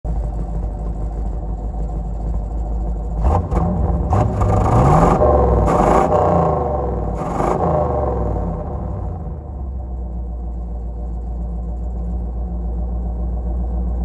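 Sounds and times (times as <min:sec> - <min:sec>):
car engine revving: 0:03.2 - 0:09.9.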